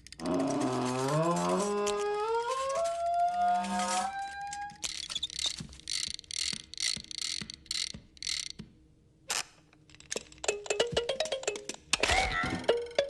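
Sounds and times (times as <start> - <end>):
ratcheting clacks: 4.8 - 8.6.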